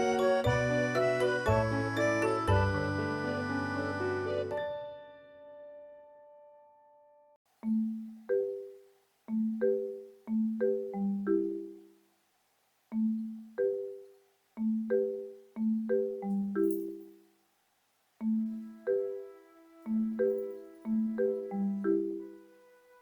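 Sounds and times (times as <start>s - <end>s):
marimba-like mallet melody: 0.0s - 3.9s, 7.6s - 12.1s, 12.9s - 17.4s, 18.2s - 22.7s.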